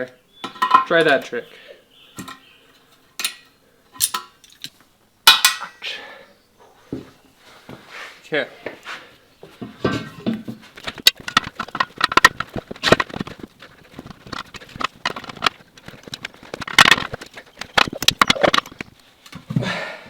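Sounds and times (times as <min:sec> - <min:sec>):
metal knocks and clanks: 0:09.6 - 0:19.0.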